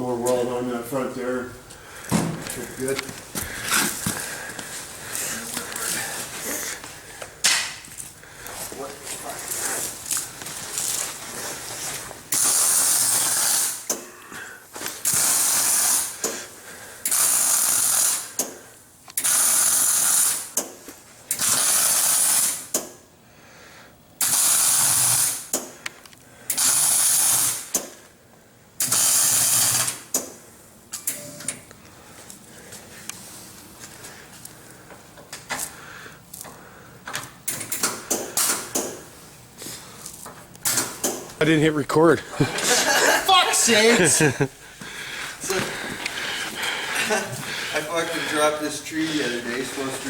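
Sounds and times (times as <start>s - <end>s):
arc welding crackling hiss: 12.3s - 14.0s, 15.0s - 16.3s, 17.0s - 18.6s, 19.2s - 20.6s, 21.3s - 22.8s, 24.2s - 25.6s, 26.5s - 27.8s, 28.8s - 30.2s.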